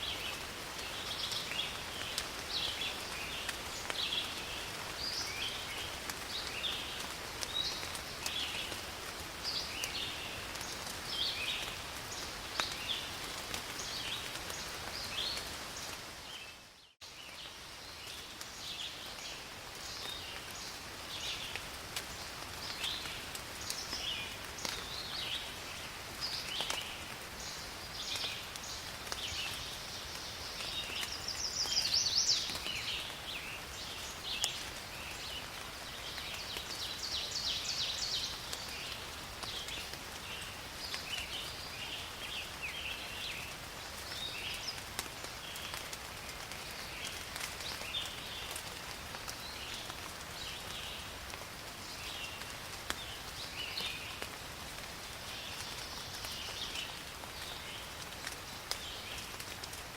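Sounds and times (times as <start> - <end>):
rain in a forest: 0.0 - 59.9
raindrops ticking: 0.2 - 16.0, 20.0 - 31.8, 43.4 - 59.9.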